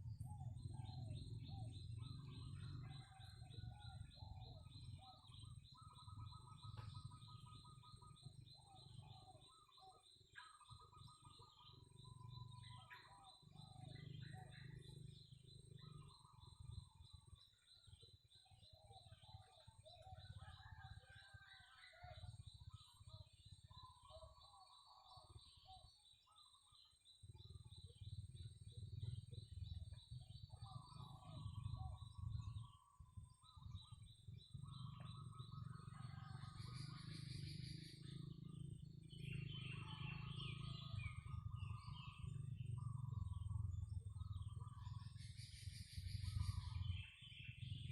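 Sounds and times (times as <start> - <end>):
low background rumble: 40.4 - 47.9.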